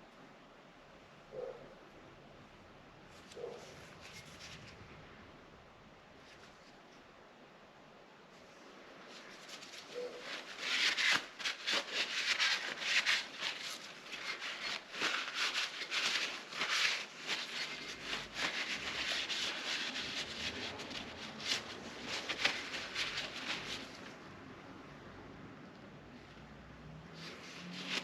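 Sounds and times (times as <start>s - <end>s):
rubbing and scrubbing on metal: 9.2s - 24.1s.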